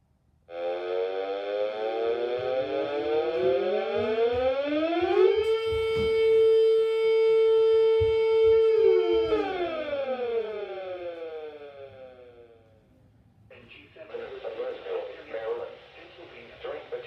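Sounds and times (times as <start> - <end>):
siren wail: 0.5 - 12.8.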